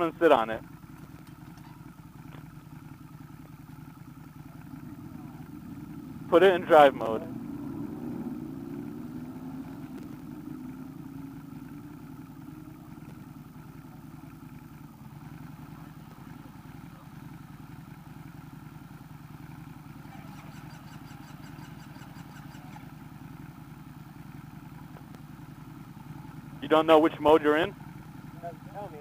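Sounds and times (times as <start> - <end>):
motorbike engine idling: 0.0 - 29.0
light high ticks: 9.6 - 10.5, 12.9 - 13.3, 24.9 - 25.3.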